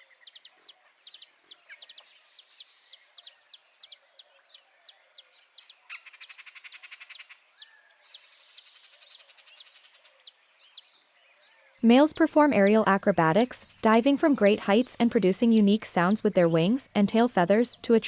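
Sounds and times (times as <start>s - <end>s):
buzzy bird trill: 0.0s - 4.3s
small birds chirping: 0.0s - 18.0s.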